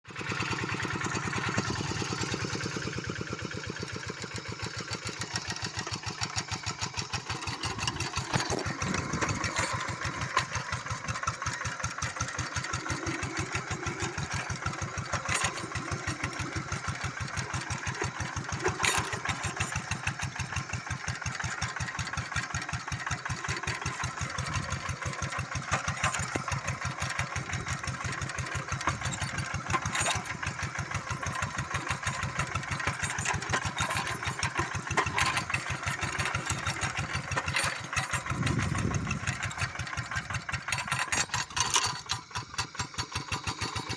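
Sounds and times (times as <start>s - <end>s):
diesel tractor engine chugging: 0.1s - 43.9s
engine knocks: 5.0s - 43.9s.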